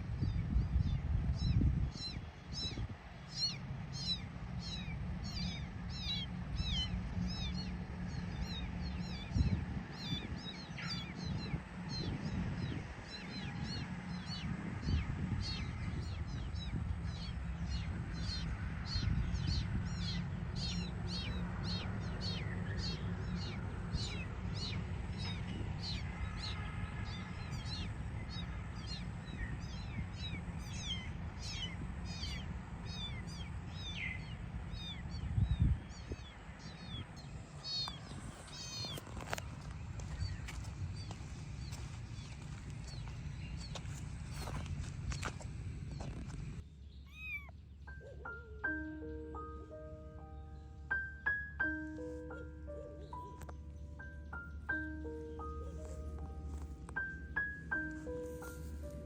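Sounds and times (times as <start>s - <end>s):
low rumbling noise: 0.0s - 48.0s, 48.6s - 59.0s
kitten mewing: 47.0s - 48.8s.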